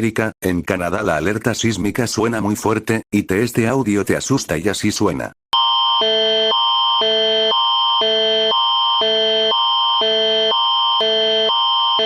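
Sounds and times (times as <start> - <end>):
electronic alert alarm alternating chords: 5.6 - 12.0.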